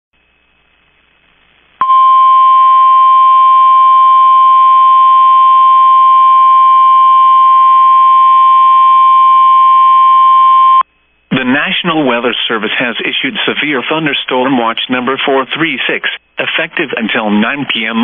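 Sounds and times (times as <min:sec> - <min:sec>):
steady warning alarm tone: 0:01.8 - 0:10.8.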